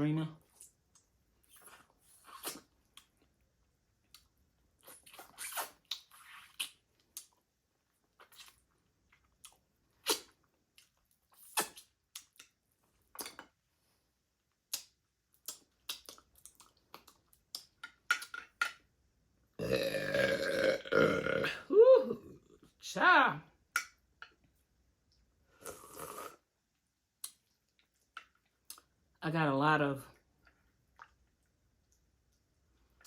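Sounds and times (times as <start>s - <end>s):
wet lip smacks: 9.4s - 12.5s, 14.7s - 17.7s, 27.2s - 28.9s.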